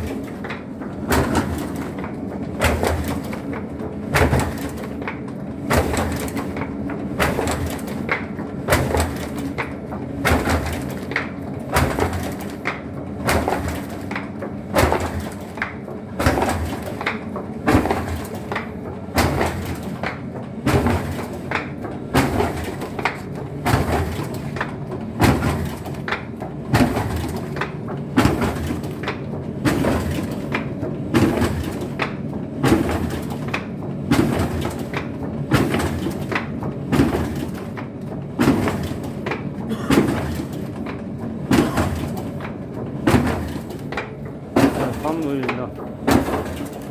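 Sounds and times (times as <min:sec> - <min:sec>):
printing machine running: 0:00.0 - 0:46.9.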